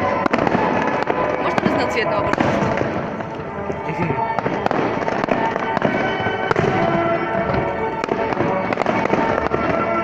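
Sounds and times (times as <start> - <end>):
fireworks bangs and crackling: 0.0 - 10.0
music playing: 0.0 - 10.0.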